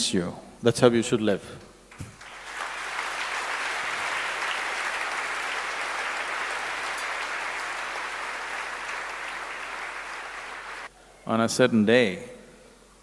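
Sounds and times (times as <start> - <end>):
audience applauding: 1.9 - 10.9.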